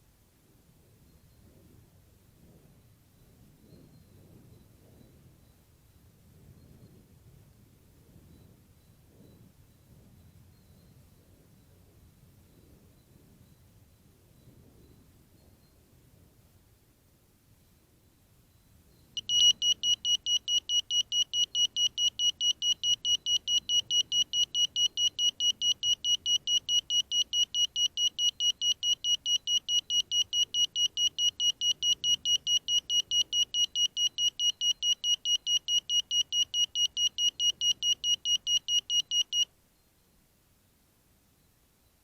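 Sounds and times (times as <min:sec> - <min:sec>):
high-pitched buzzer beeping: 0:19.2 - 0:39.5.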